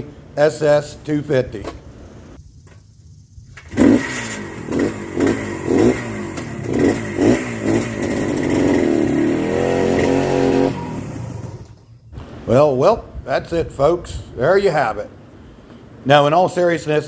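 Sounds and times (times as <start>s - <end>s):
motorcycle engine revving: 3.5s - 12.5s.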